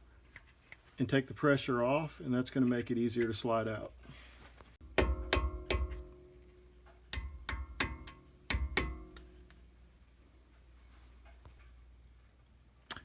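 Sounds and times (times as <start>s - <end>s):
hammer tapping metal with ringing: 4.8s - 9.6s.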